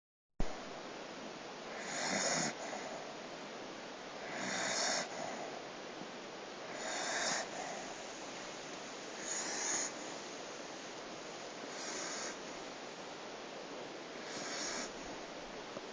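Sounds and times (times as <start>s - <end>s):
background hiss: 0.4s - 15.9s
dog snoring: 1.7s - 3.1s, 4.2s - 5.5s, 6.6s - 10.9s, 11.6s - 12.6s, 14.1s - 15.2s.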